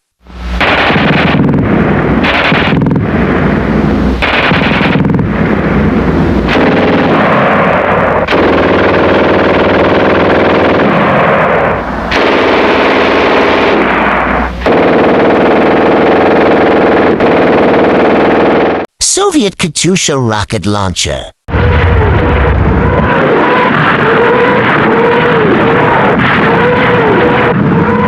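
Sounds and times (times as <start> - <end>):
machine gun firing bursts: 0.6 - 1.6, 2.2 - 3.0, 4.2 - 5.2, 6.5 - 18.9.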